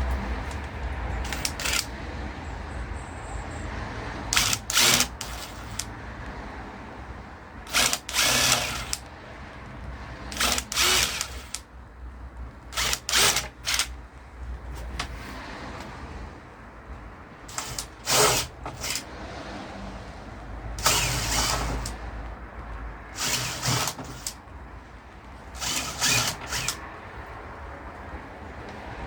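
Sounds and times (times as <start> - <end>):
power drill running: 1.2 - 1.9, 4.3 - 5.9, 7.7 - 9.1, 10.3 - 11.6, 12.8 - 13.9, 17.5 - 19.1, 20.8 - 22.0, 23.2 - 24.4, 25.6 - 26.8.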